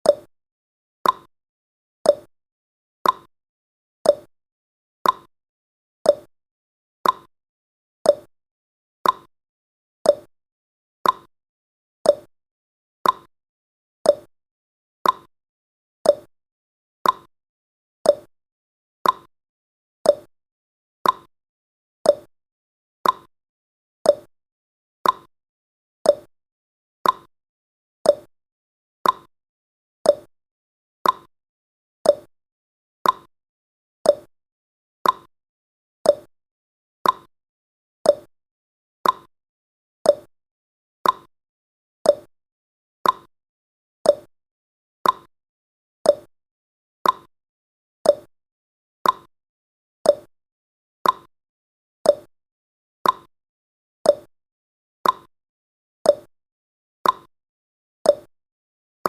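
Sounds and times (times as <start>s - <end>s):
clock ticking: 39.0s - 39.3s, 45.0s - 45.3s.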